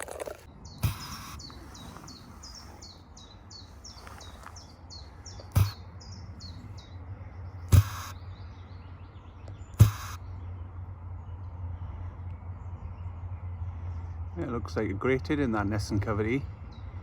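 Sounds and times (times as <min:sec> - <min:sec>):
chiffchaff singing: 0:00.0 - 0:06.9, 0:07.6 - 0:08.2, 0:09.7 - 0:10.2
loud thumps: 0:00.8 - 0:02.6, 0:05.4 - 0:06.8, 0:07.7 - 0:08.2, 0:09.8 - 0:10.2.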